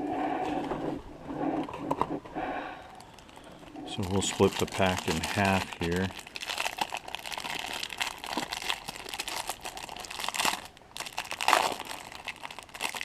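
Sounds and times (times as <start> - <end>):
plastic wrapper crinkling: 3.0 - 13.0.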